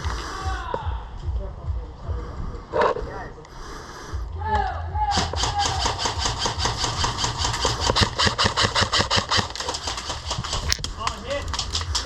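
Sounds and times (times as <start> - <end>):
airsoft rifle full-auto burst: 5.1 - 10.6.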